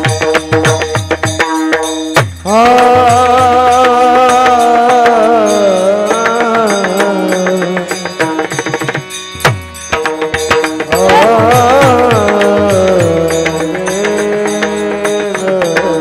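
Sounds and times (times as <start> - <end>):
person singing long wavering notes: 2.4 - 8.2, 10.9 - 16.0.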